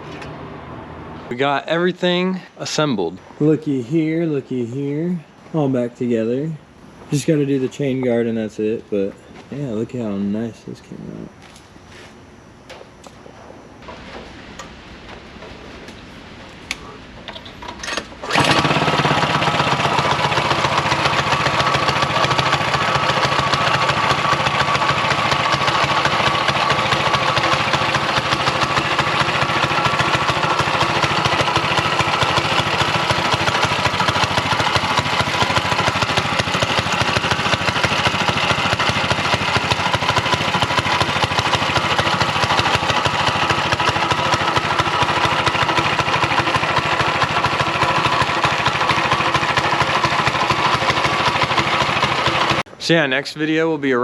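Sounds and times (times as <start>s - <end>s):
small engine starting and running: 17.3s - 52.7s.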